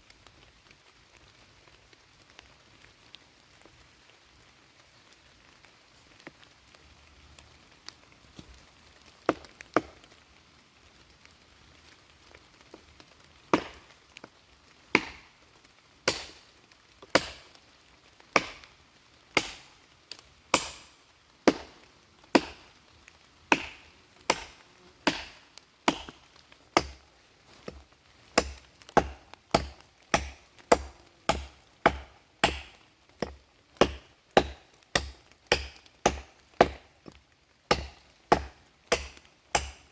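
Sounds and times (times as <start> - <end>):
axe chopping firewood: 9.3 - 10.0, 13.5 - 13.9, 14.9 - 15.3, 16.1 - 17.6, 18.4 - 18.7, 19.4 - 19.7, 20.5 - 22.7, 23.5 - 39.9.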